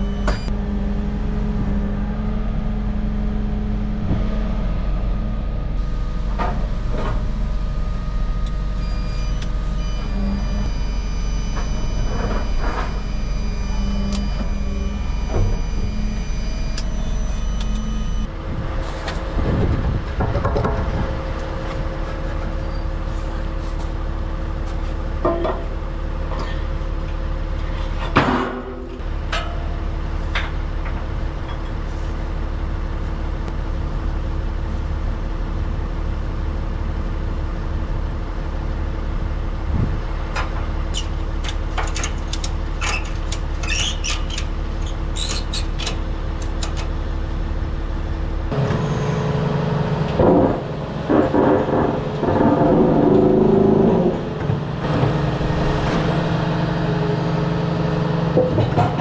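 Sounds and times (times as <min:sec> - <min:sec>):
knocks and rattles: 0:41.0 - 0:47.0.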